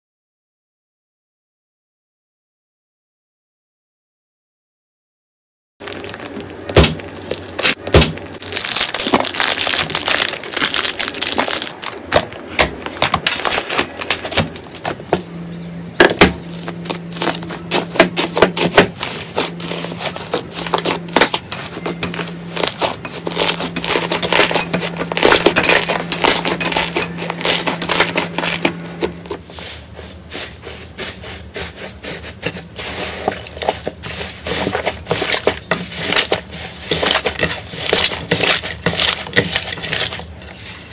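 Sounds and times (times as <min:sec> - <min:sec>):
crunchy slime crackling: 0:05.8 - 0:15.0, 0:16.5 - 0:29.5, 0:33.0 - 0:40.6.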